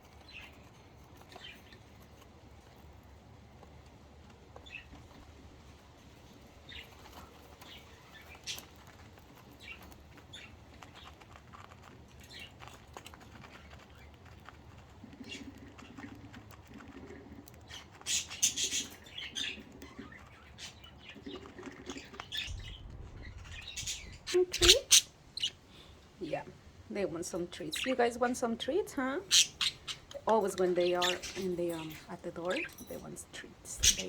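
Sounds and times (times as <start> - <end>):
budgerigars chirping: 7.6 - 8.8, 17.7 - 26.4, 27.6 - 34.0.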